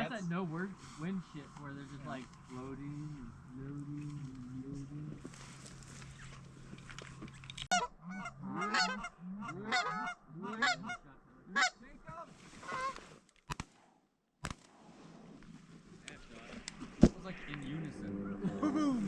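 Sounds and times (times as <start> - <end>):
goose honking: 7.7 - 11.8, 12.6 - 13.0
sharp clicks: 13.3 - 13.8.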